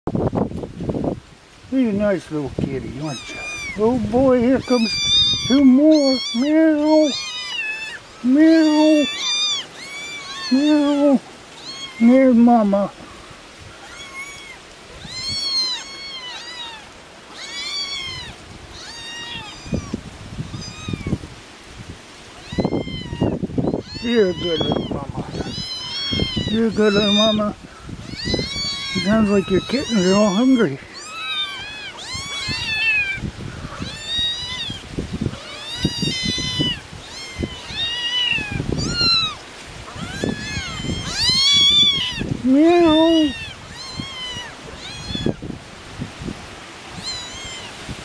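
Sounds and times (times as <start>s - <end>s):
wind thumps on microphone: 0.1s - 5.7s, 19.5s - 29.8s, 32.1s - 42.5s, 43.3s - 47.2s
kittens meowing: 2.8s - 21.3s, 22.2s - 45.5s, 46.9s - 47.9s.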